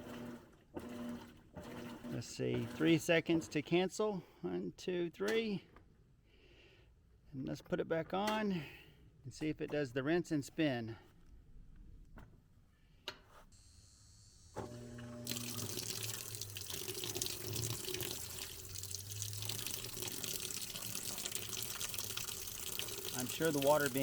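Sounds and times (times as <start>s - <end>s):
water rushing into drum: 15.2s - 24.0s.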